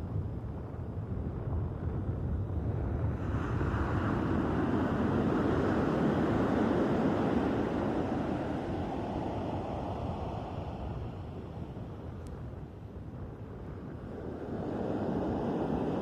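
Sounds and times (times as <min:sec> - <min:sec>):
wind rumble on microphone: 0:00.0 - 0:16.0
sea waves washing: 0:03.2 - 0:11.8.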